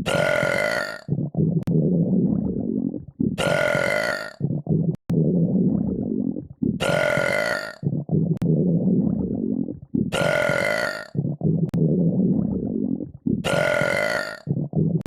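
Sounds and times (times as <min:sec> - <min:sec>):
long drawn-out burps: 0:00.0 - 0:01.7, 0:03.3 - 0:05.0, 0:06.7 - 0:08.4, 0:10.0 - 0:11.8, 0:13.3 - 0:15.0.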